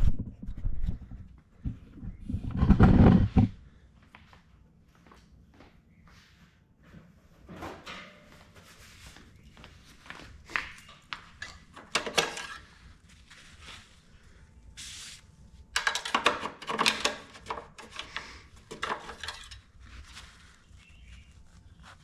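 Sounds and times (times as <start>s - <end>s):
clattering scrape: 7.4s - 9.3s, 11.4s - 12.9s, 15.8s - 20.6s
hissy rub: 13.0s - 15.5s.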